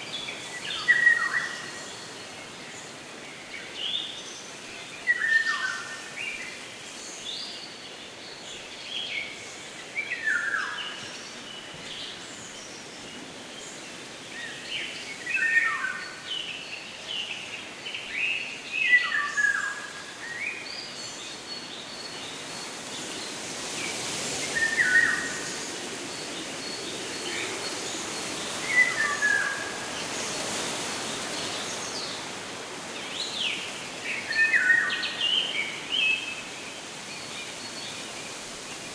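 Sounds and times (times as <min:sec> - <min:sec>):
songbirds singing: 0:00.0 - 0:38.9
steady outdoor hiss: 0:00.0 - 0:38.9.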